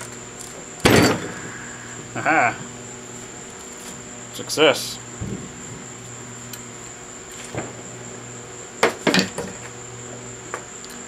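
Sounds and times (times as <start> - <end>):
steady low hum: 0.0 - 11.0
metal clanks: 0.8 - 1.5.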